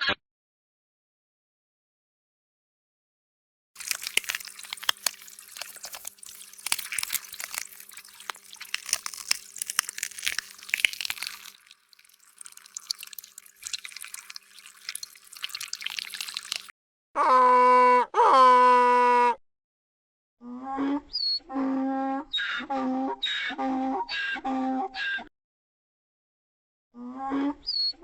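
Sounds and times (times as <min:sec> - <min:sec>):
water dripping and splashing: 0:03.8 - 0:16.7.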